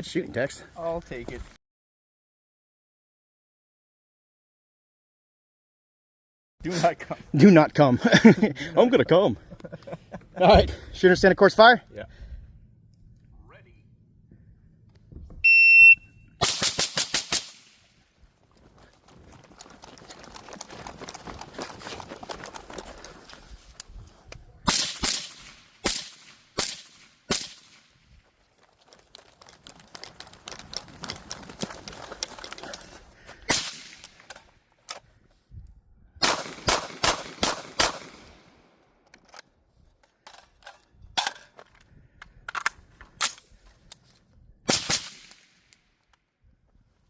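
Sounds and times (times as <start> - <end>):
gunshots: 16.4 - 17.8, 24.7 - 27.9, 33.5 - 34.1, 36.2 - 38.5, 44.7 - 45.5.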